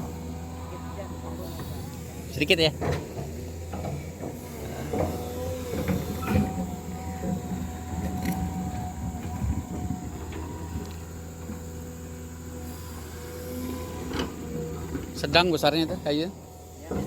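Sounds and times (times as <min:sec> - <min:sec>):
diesel engine running: 0:00.0 - 0:17.0
held whine: 0:00.0 - 0:17.0
knocks and clanks: 0:01.1 - 0:11.7, 0:13.9 - 0:17.0.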